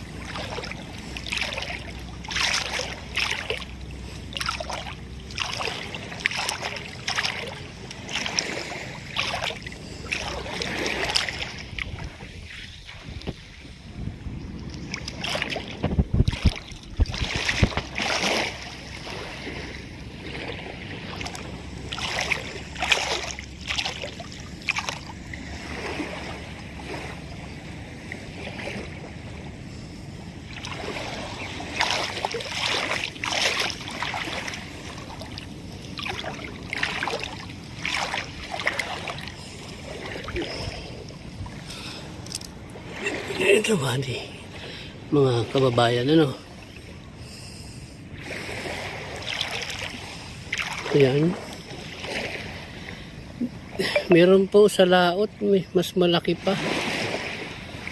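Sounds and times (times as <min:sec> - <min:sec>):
sea waves washing onto beach: 0:00.0 - 0:57.9
wind gusting on microphone: 0:07.8 - 0:45.8.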